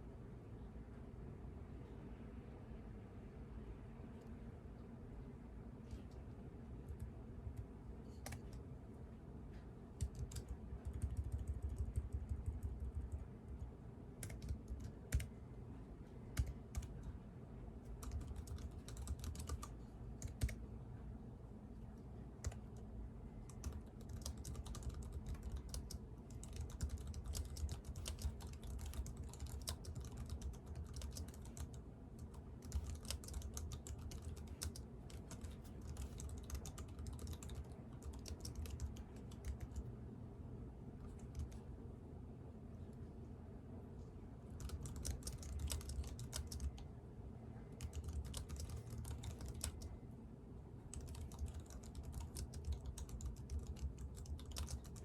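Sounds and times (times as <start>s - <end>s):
faint low background noise: 0.0s - 55.0s
computer keyboard typing: 6.8s - 8.6s, 10.0s - 15.4s, 16.3s - 17.2s, 17.9s - 20.6s, 22.4s - 39.9s, 41.0s - 41.6s, 44.6s - 46.8s, 47.8s - 49.9s, 50.9s - 55.0s.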